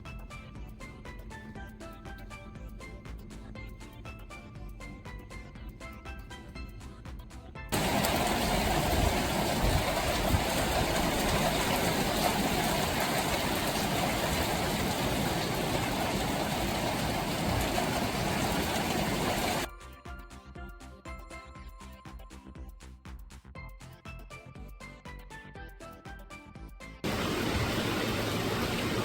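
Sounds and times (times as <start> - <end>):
low rumbling buffeting: 7.8 - 19.7, 27.0 - 29.0
wind and rain rushing: 7.8 - 19.7, 27.0 - 29.0.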